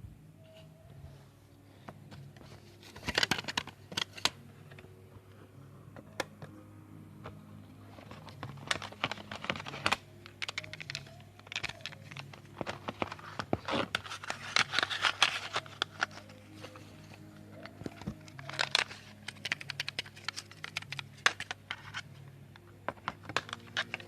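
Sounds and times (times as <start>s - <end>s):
low steady hum: 0.0s - 24.0s
cassette tape plastic clicks: 3.0s - 4.8s, 8.1s - 16.4s, 17.6s - 22.0s, 22.9s - 24.0s.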